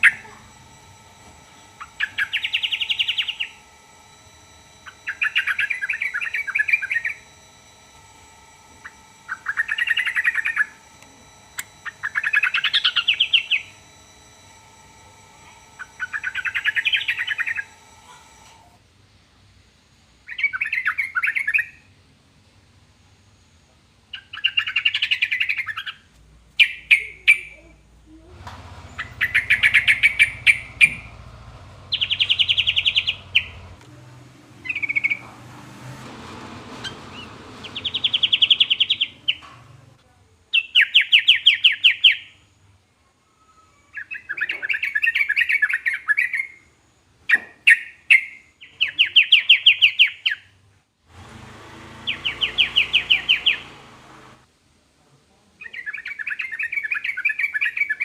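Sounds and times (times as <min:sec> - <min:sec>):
bird singing fast-pulsed notes: 0:00.0 - 0:18.4, 0:20.2 - 0:21.9, 0:24.1 - 0:26.0, 0:26.6 - 0:35.8, 0:36.6 - 0:39.5, 0:40.5 - 0:42.5, 0:43.9 - 0:46.7, 0:47.3 - 0:50.5, 0:51.7 - 0:54.3.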